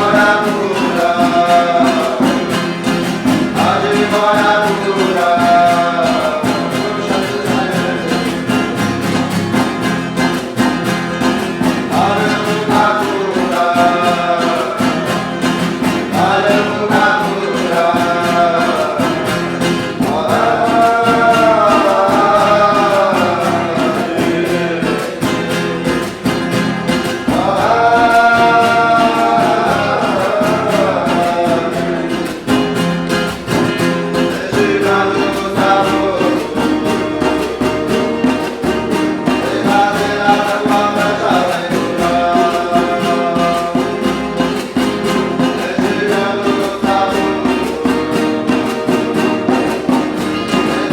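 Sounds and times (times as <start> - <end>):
person chanting in gliding phrases: 0.0 - 2.5, 3.6 - 8.5, 11.9 - 26.1, 27.3 - 32.2, 34.2 - 38.7, 39.3 - 44.0
steady instrumental accompaniment: 0.0 - 50.9.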